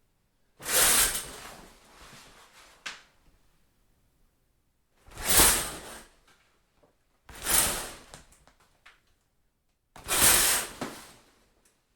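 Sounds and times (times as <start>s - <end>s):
shower curtain swishing on rod: 0.6s - 3.0s, 5.1s - 6.1s, 7.3s - 8.2s, 10.0s - 11.3s.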